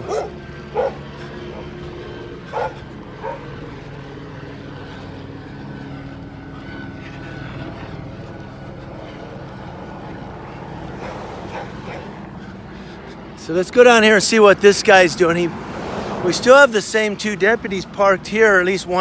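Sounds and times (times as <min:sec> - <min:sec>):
dog barking: 0:00.0 - 0:01.9, 0:02.5 - 0:03.5, 0:10.9 - 0:12.2
helicopter droning overhead: 0:00.0 - 0:19.0.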